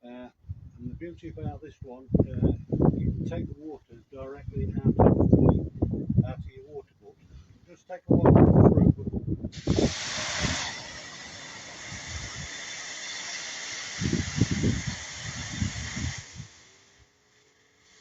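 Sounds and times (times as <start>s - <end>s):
low rumbling bursts: 0.4s - 17.1s
pressure washer spraying: 9.5s - 18.0s.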